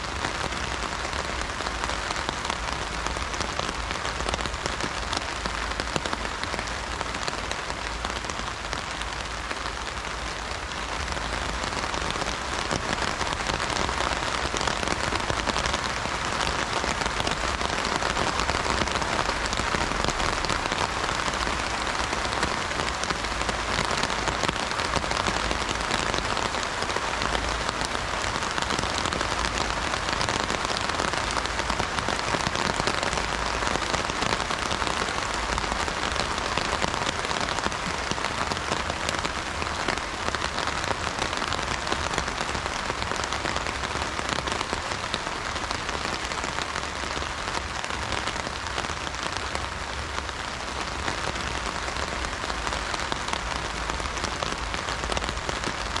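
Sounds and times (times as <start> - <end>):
rain on an umbrella: 0.0 - 56.0.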